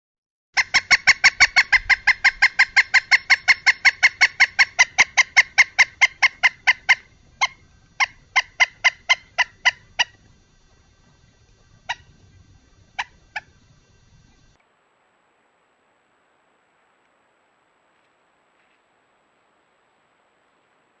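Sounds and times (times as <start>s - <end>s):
bird piping call: 0.6s - 10.2s, 12.9s - 13.6s.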